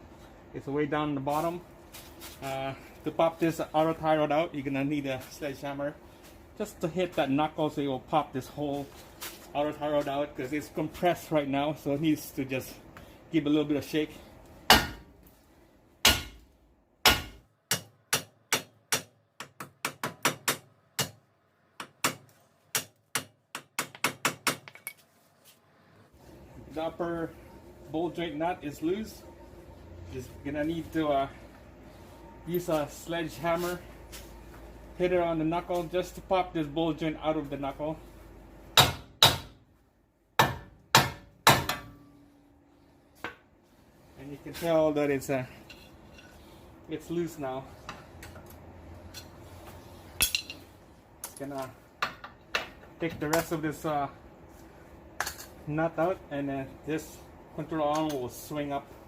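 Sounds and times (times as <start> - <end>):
sledgehammer striking metal: 16.0 - 16.4, 17.0 - 19.1.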